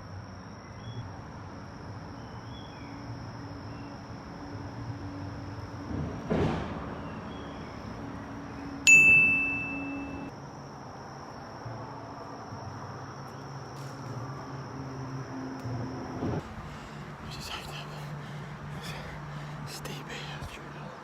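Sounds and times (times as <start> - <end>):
bright metallic ding: 8.9 - 10.3.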